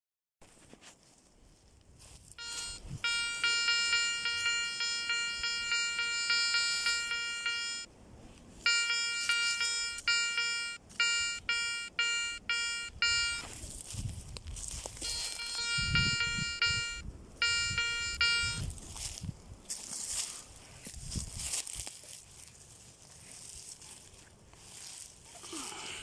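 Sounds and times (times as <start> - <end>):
metal detector beeping: 2.4 - 7.9, 8.6 - 13.8, 14.7 - 19.3.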